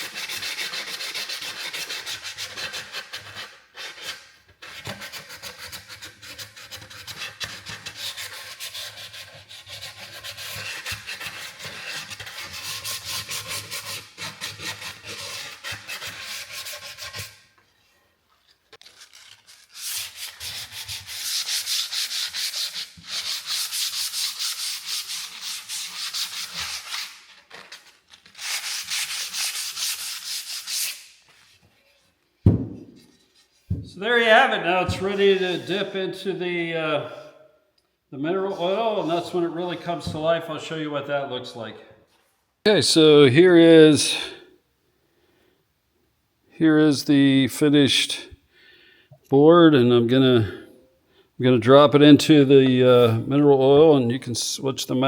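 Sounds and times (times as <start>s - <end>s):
sandpaper rubbing on wood: 0.0s - 17.4s, 19.0s - 31.6s.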